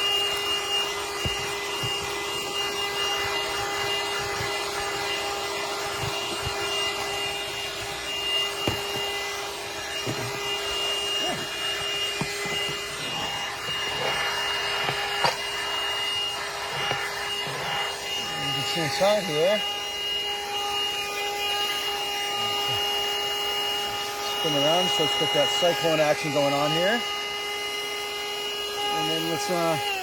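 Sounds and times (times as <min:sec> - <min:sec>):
nozzle scraping on carpet: 0:00.0 - 0:20.0
handheld vacuum cleaner whining: 0:00.0 - 0:30.0.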